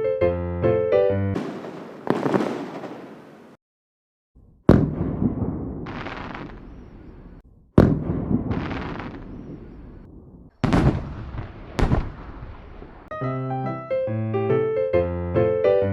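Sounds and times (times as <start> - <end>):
firework bangs: 1.4 - 3.6, 4.7 - 13.1.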